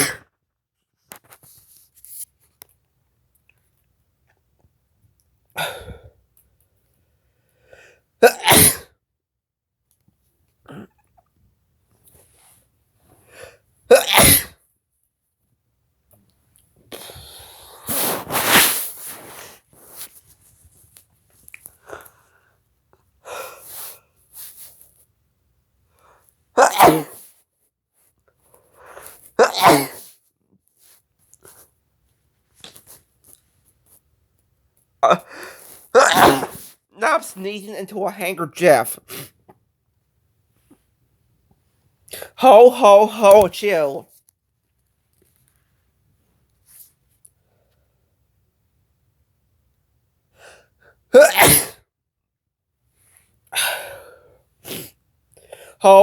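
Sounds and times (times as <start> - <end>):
person sneezing: 0.0 - 0.3, 5.6 - 6.1, 8.2 - 8.9, 13.9 - 14.6, 17.0 - 19.0, 26.6 - 27.3, 29.4 - 30.1, 35.0 - 37.5, 42.2 - 43.7, 51.1 - 51.8, 53.6 - 54.9
faint in-breath: 7.2 - 8.1.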